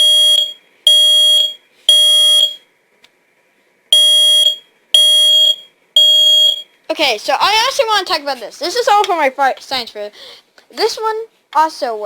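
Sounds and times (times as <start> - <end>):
smoke alarm beeping: 0.0 - 2.7, 3.9 - 6.8.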